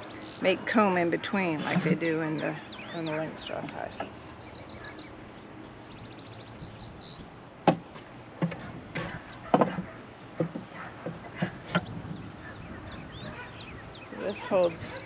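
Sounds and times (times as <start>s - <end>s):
wooden frames knocking into box: 7.7s - 11.9s.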